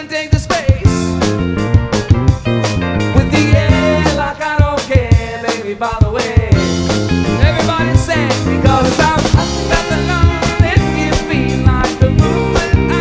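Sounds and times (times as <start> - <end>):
drum kit beat: 0.0 - 13.0
guitar: 0.0 - 13.0
bass guitar: 0.4 - 13.0
bending melody line: 1.4 - 5.0.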